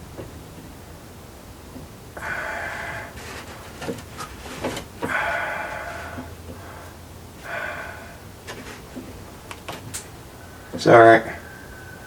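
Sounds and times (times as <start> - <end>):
person exhaling through the nose: 2.2 - 3.3, 5.0 - 8.3.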